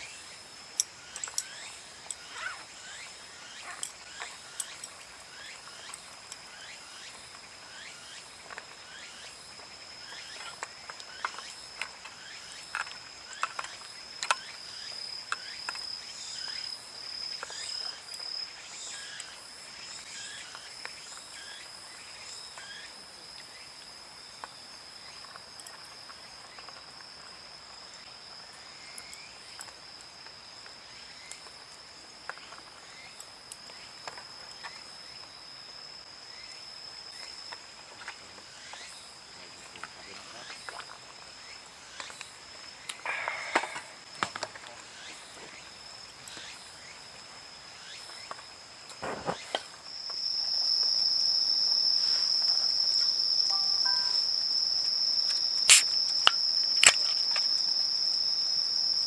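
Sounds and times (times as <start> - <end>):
crickets trilling: 0.0 - 59.0
sharp clicks and pops: 55.3 - 57.5.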